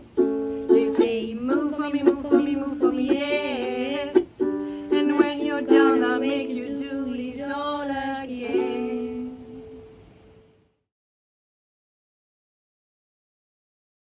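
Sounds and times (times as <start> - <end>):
ukulele strumming: 0.0 - 9.9
person singing: 0.0 - 10.0.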